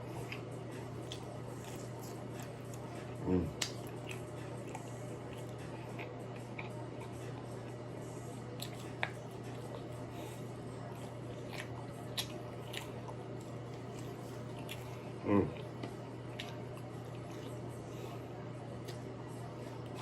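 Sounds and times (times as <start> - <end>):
wet chewing mouth sounds: 0.0 - 18.2
steady low hum: 0.0 - 20.0.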